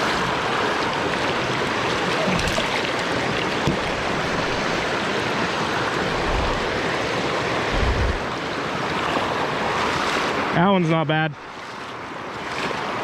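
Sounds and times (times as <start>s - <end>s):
flowing creek water: 0.0s - 13.0s
low rumbles: 6.0s - 6.8s, 7.6s - 8.3s.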